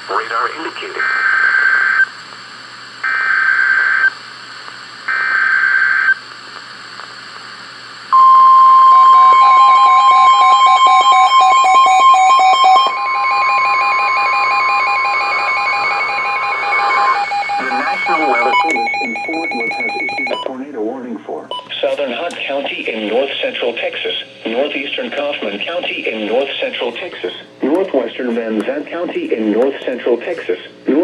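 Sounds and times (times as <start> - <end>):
steady warning alarm tone: 3.0 - 4.1, 8.1 - 20.5
stepped beeping alarm: 8.1 - 20.5
warbling digital header bursts: 11.4 - 20.4.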